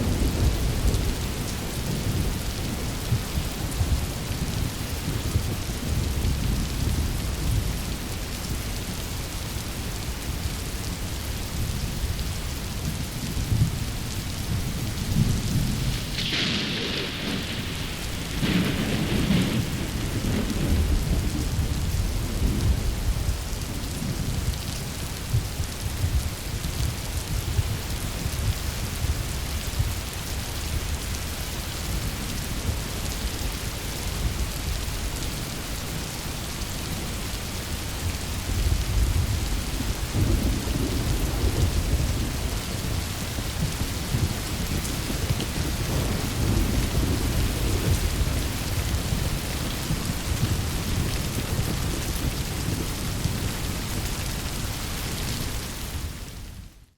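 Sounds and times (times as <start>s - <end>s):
heavy rain: 0.0s - 56.9s
rolling thunder: 14.6s - 24.6s, 38.0s - 54.2s.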